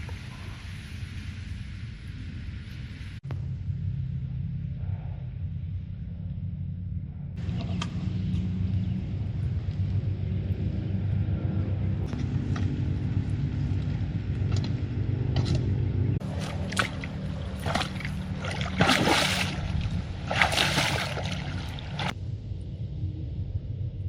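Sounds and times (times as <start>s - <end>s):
low engine-like drone: 0.0s - 24.0s
water splashing and sloshing: 16.2s - 22.2s.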